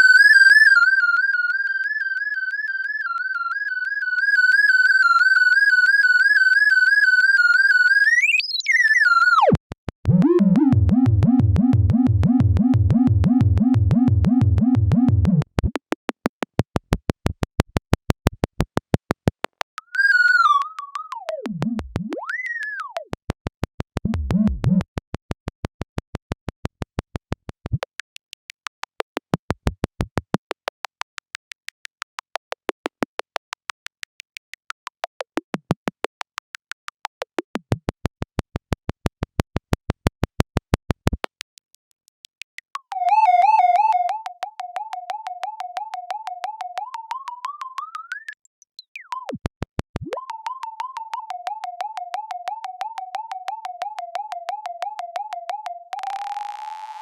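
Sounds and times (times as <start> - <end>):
warbling electronic tone: 0.0 - 15.4, 19.9 - 23.0, 42.9 - 48.4, 50.0 - 57.0
fast electronic clicks: 0.0 - 57.0.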